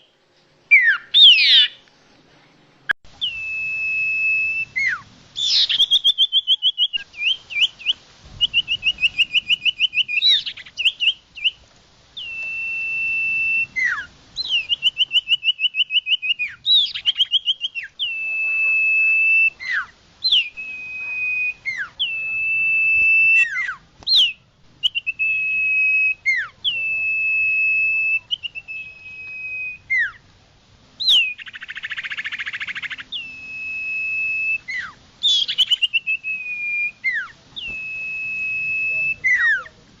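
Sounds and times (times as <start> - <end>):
songbird whistling and trilling: 0.7 - 1.8, 3.1 - 11.6, 12.2 - 30.2, 31.0 - 39.8.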